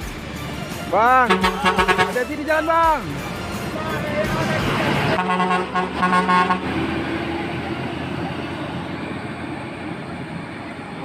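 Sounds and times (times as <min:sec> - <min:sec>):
bus engine running: 0:00.0 - 0:11.0
bus horn blasts: 0:01.2 - 0:02.3, 0:05.2 - 0:07.0.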